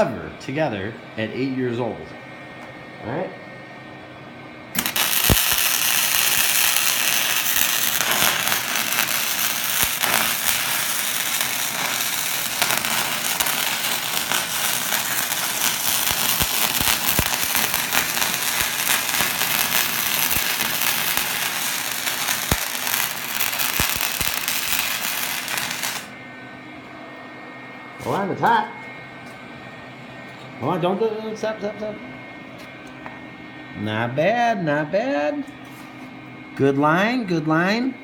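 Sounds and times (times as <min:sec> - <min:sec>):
welder arc crackling: 0:04.7 - 0:26.2.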